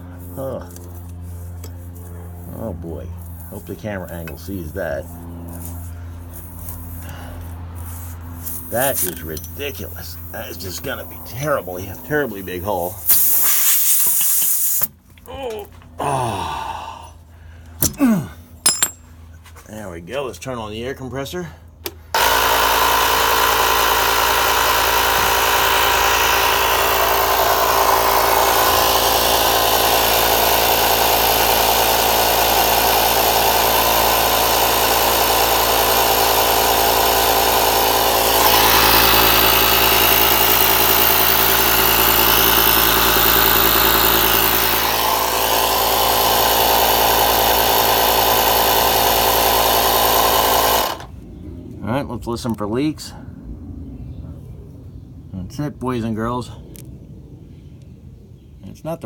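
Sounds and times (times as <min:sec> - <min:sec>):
air compressor running: 0:00.0 - 0:15.1, 0:21.8 - 0:51.2.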